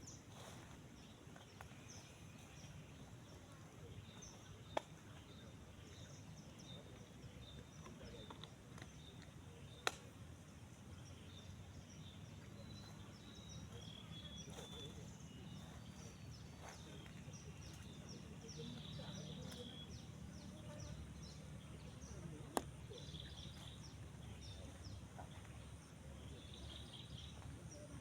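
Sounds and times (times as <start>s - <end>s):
low background noise: 0.0s - 28.0s
faint bird chirps: 10.9s - 28.0s.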